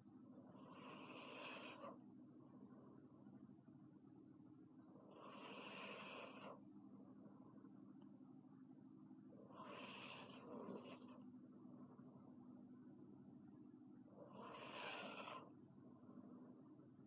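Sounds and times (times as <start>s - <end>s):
steady low hum: 0.0s - 17.0s
girl snoring: 0.6s - 1.9s, 5.1s - 6.6s, 9.5s - 11.1s, 14.3s - 15.5s.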